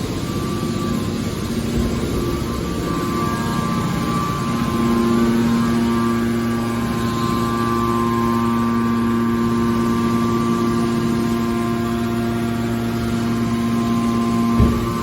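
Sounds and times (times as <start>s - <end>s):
baler machinery humming: 0.0s - 15.0s.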